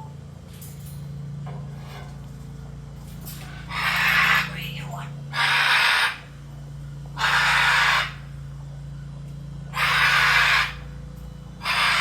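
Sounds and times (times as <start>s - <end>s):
steady low hum: 0.0s - 12.0s
macaw screeching: 3.5s - 6.3s, 7.2s - 8.3s, 9.7s - 11.0s, 11.6s - 12.0s.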